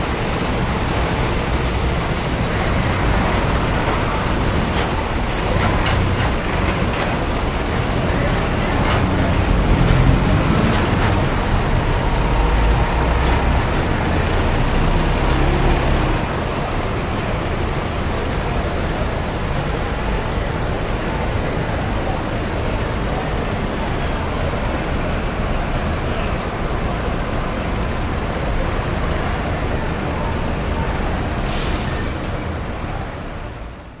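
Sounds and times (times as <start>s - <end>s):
vehicle engine rumble passing: 0.0s - 23.5s
road traffic noise: 0.0s - 34.0s.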